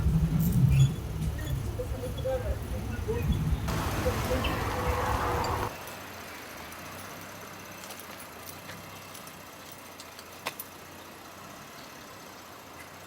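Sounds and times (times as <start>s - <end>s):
steady low hum: 0.0s - 4.2s.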